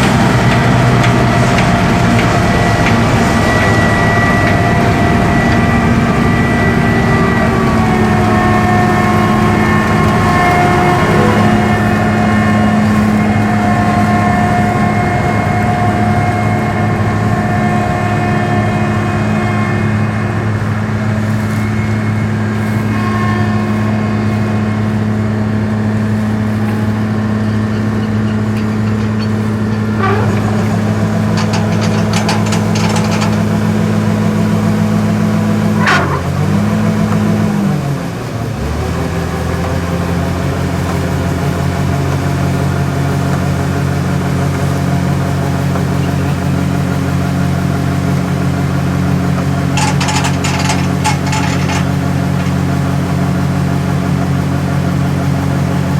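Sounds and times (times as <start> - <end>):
combine diesel engine running: 0.0 - 55.9
steady mechanical whine: 0.0 - 55.9
clicks and rattles: 28.0 - 33.8, 49.4 - 52.8.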